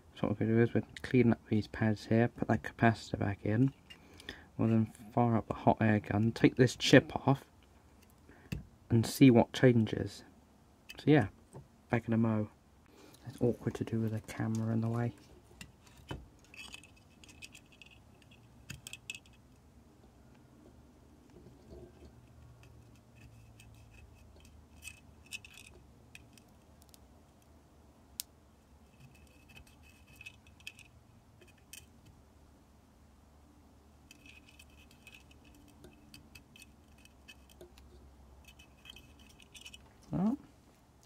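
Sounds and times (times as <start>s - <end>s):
low steady hum: 0.0s - 41.0s
small metallic clicks: 21.3s - 27.6s, 29.0s - 32.2s, 34.0s - 40.1s.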